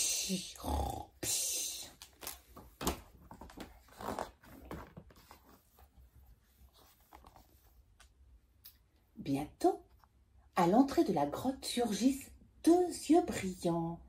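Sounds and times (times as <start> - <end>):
soft rustling and clicking: 2.0 - 9.0.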